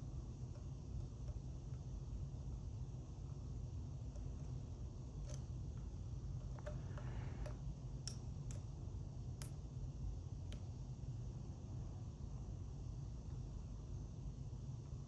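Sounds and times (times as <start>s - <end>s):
steady low hum: 0.0s - 15.0s
lock pick metal clicks: 5.2s - 8.7s.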